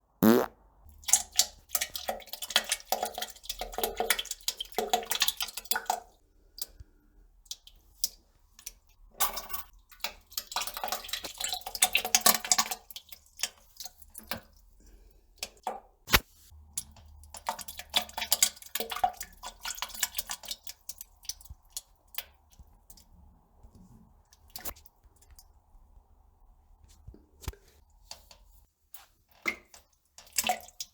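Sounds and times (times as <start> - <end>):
wet crackling flatulence: 0.2 - 0.6.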